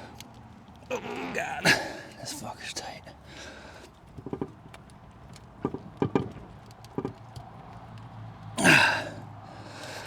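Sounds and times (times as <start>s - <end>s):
hose fittings knocking and clicking: 4.2s - 4.8s, 5.5s - 7.5s
man grunting: 8.6s - 9.0s.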